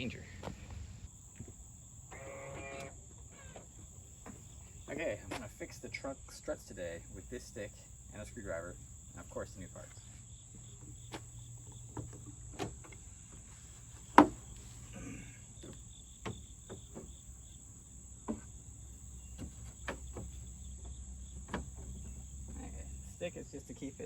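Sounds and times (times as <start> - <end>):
crickets chirring: 0.0 - 24.0
light clicks and knocks: 19.3 - 22.7.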